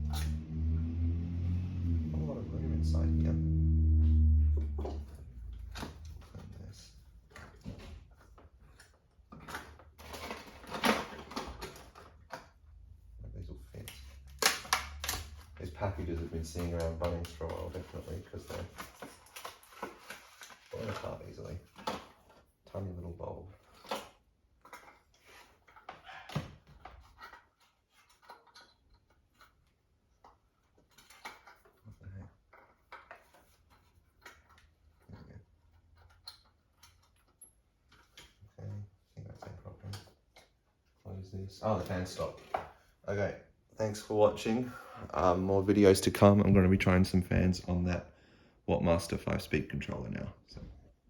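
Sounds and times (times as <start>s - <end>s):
faint low hum: 0.0s - 8.0s.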